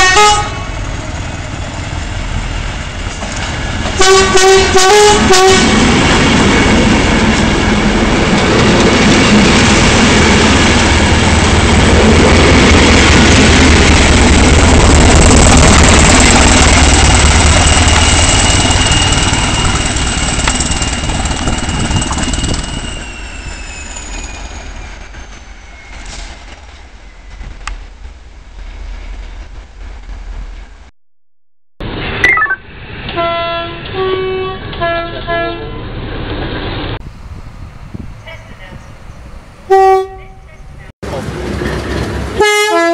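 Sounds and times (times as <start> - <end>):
train horn blast: 0.0 - 0.8, 3.9 - 5.9, 33.1 - 35.8, 39.7 - 40.5, 42.4 - 42.9
train passing at speed: 0.0 - 30.9, 31.8 - 42.9.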